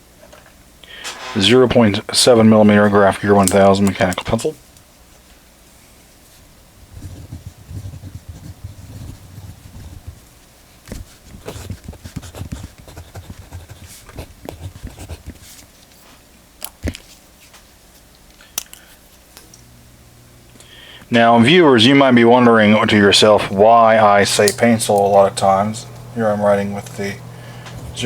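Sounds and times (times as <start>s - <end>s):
pencil scratching on paper: 7.0s - 10.2s, 11.3s - 15.6s.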